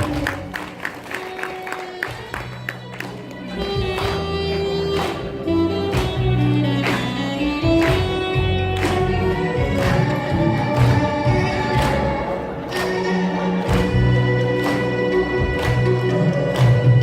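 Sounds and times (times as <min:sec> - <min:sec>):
sustained bass notes: 0:02.2 - 0:17.0
steady beat with drum hits: 0:03.7 - 0:17.0.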